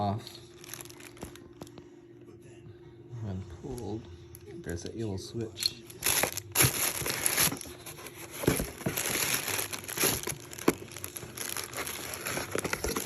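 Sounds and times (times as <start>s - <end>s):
packaging crinkling and rustling: 0.5s - 1.7s, 5.9s - 13.0s.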